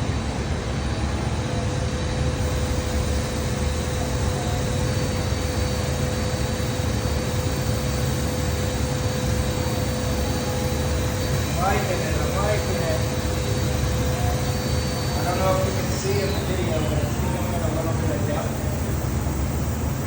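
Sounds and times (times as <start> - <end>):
faint steady whine: 0.0 - 20.0.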